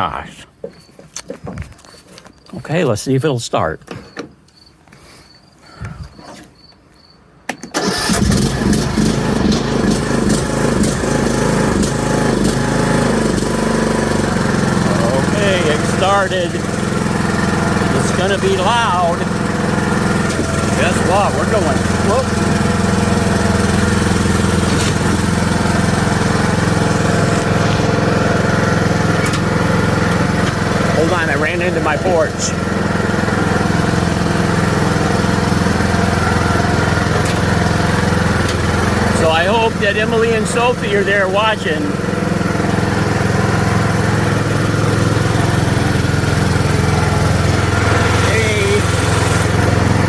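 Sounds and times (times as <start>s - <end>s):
riding lawn mower engine running: 7.7s - 50.0s.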